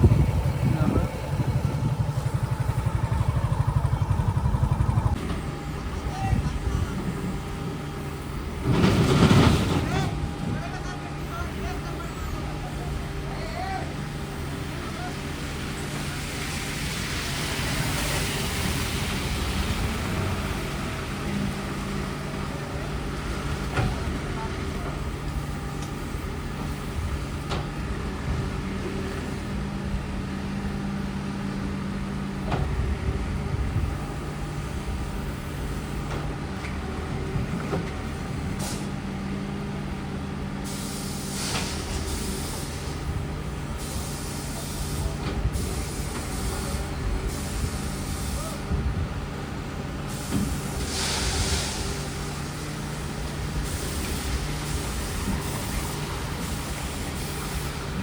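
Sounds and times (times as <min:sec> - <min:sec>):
heavy diesel machinery running: 0:00.0 - 0:58.0
hissing air bursts: 0:40.6 - 0:43.1, 0:43.7 - 0:48.6, 0:50.0 - 0:58.0.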